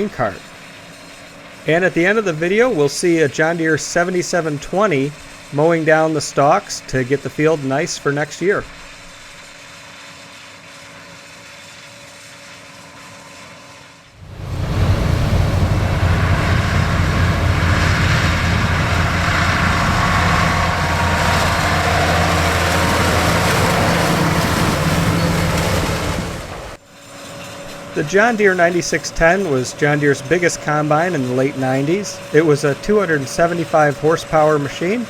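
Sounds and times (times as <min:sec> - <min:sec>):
combine harvester engine: 0:00.0 - 0:09.6, 0:14.1 - 0:35.0.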